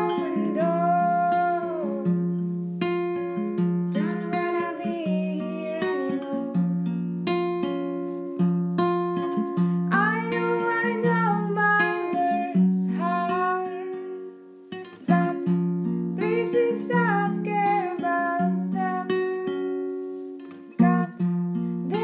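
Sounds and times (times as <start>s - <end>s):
person singing: 0.0s - 2.2s, 3.9s - 6.7s, 9.9s - 14.2s, 15.0s - 15.6s, 16.2s - 19.5s, 20.6s - 22.0s
acoustic guitar plucking: 0.0s - 22.0s.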